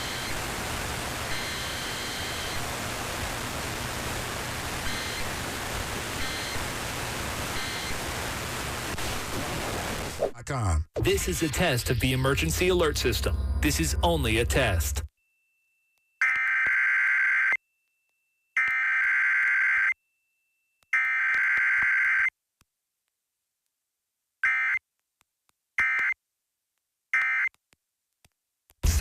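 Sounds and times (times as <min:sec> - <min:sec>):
screeching digital data bursts: 0:01.2 - 0:02.8, 0:04.8 - 0:06.8.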